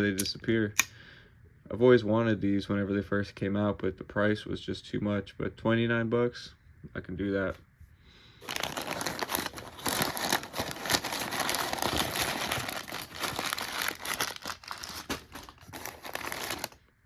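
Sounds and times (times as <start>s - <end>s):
packaging crumpling and rustling: 8.4s - 16.8s
packaging tearing: 8.4s - 16.8s.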